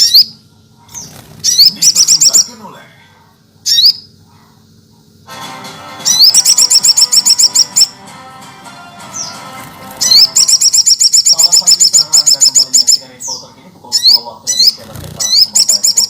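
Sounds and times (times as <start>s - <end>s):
sunbird singing: 0.0s - 2.8s, 3.6s - 4.4s, 6.0s - 8.0s, 9.0s - 16.0s.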